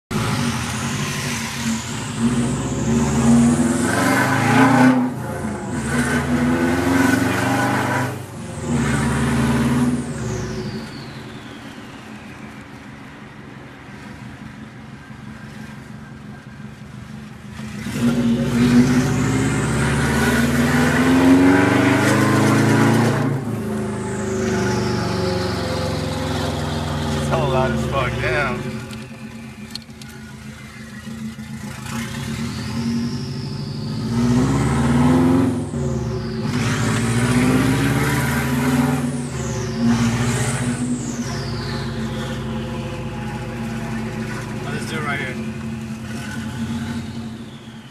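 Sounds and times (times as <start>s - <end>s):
car engine and exhaust revving: 0.1s - 47.9s
high whine: 18.3s - 47.9s.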